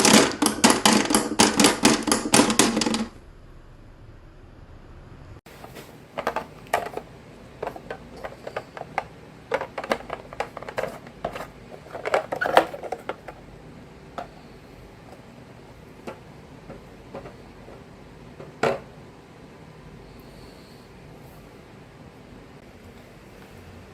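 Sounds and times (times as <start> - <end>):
marbles clacking down wooden run: 0.0 - 3.1.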